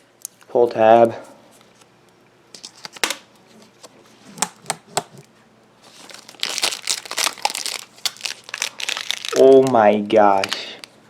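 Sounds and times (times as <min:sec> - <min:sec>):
packaging crinkling and rustling: 0:02.6 - 0:11.0
packaging being pulled open: 0:05.8 - 0:09.8, 0:10.4 - 0:10.9.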